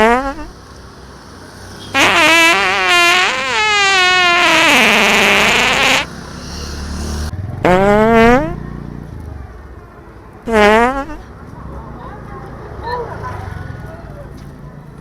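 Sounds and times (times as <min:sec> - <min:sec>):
fart sound effects: 0:00.0 - 0:00.5, 0:02.0 - 0:06.1, 0:07.6 - 0:08.6, 0:10.5 - 0:11.2.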